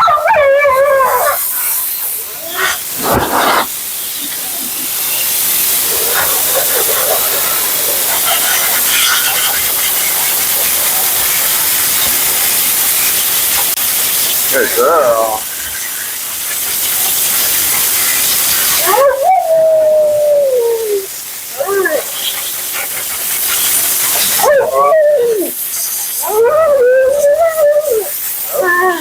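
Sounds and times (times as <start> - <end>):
dog howling: 0.0 - 1.5, 18.8 - 22.2, 24.4 - 25.6, 26.2 - 29.0
pet dryer blowing air: 2.6 - 3.7.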